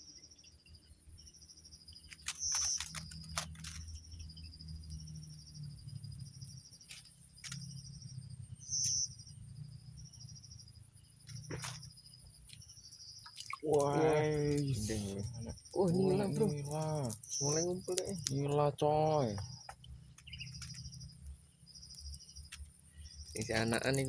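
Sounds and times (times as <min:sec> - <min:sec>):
insects trilling: 0:00.0 - 0:24.0.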